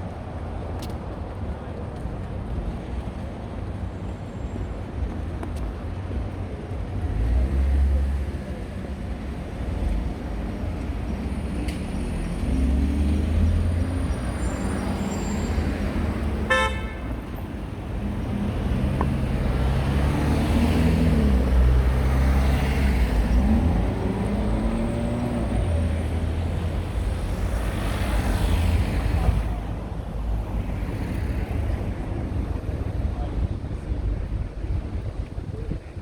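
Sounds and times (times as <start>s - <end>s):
road traffic rumble: 0.0s - 36.0s
car horn toot: 16.4s - 17.2s.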